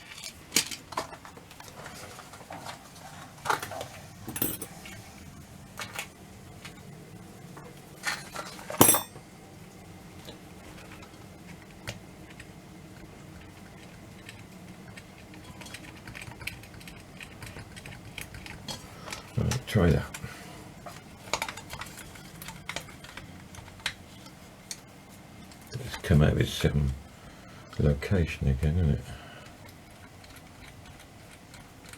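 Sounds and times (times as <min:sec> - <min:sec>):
metal clock parts clinking: 0:04.3 - 0:04.7, 0:08.8 - 0:09.2.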